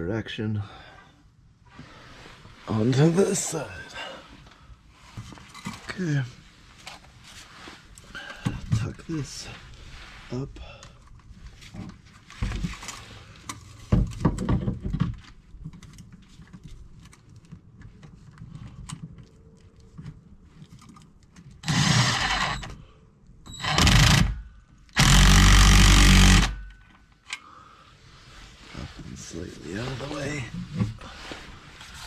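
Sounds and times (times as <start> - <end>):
cordless drill driving a bolt: 21.6 - 22.7, 23.5 - 24.4, 25.0 - 26.7.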